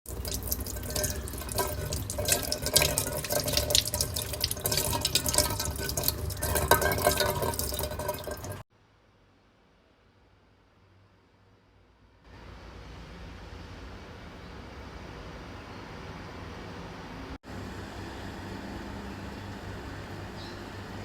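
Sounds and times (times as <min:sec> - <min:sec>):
water running from a tap: 0:00.1 - 0:08.6.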